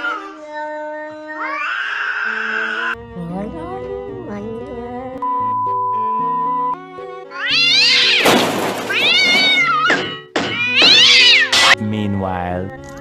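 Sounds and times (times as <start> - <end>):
cat meowing loudly: 1.3 - 3.0, 7.3 - 11.8
background music: 2.9 - 13.0.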